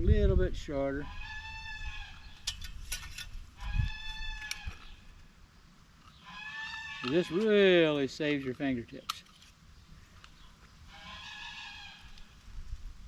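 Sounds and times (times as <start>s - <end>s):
farm animal calling: 1.0s - 2.5s, 3.6s - 5.2s, 6.1s - 8.0s, 10.4s - 12.4s.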